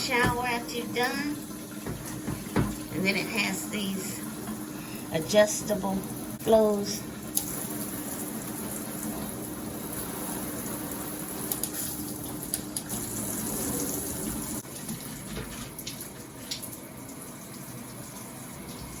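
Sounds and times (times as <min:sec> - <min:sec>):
shower head spraying water: 0:05.2 - 0:14.6.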